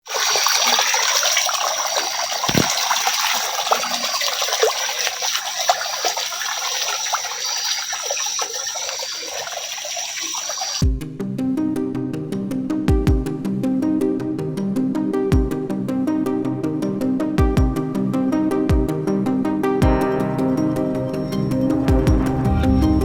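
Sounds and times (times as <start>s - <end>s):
water running and splashing: 0.0s - 10.8s.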